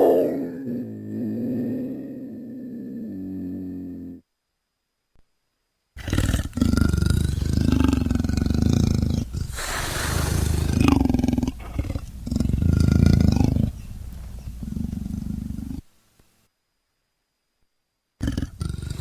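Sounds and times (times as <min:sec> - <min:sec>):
big cat growling roars: 0:00.0 - 0:04.2, 0:06.0 - 0:15.8, 0:18.2 - 0:19.0.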